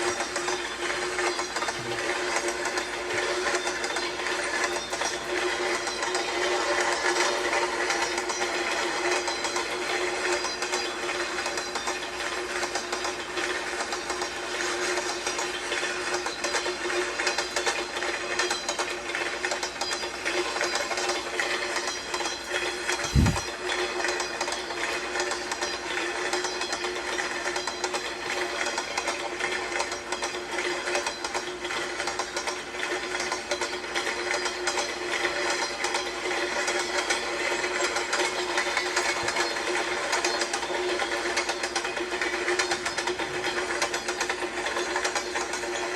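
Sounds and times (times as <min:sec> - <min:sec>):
train wheels clattering: 0:00.0 - 0:45.9
steady hum: 0:22.0 - 0:23.7.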